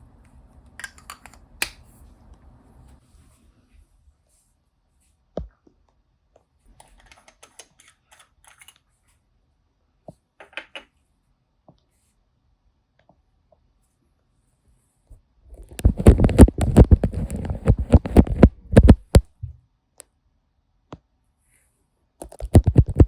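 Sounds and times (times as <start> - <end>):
makeup items clicking and tapping: 0.8 - 1.8, 15.8 - 19.3, 22.2 - 23.0.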